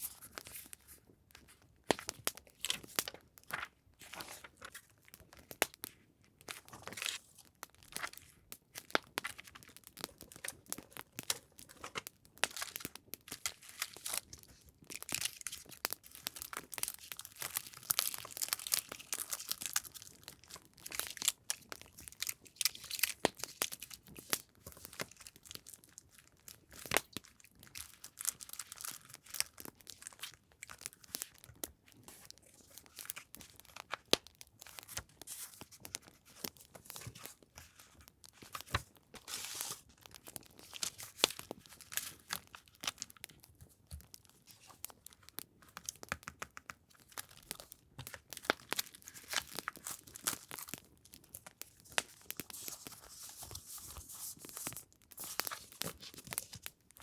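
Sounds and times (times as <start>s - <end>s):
paper rustling and crinkling: 0.0s - 5.8s, 6.4s - 45.2s, 47.0s - 56.7s.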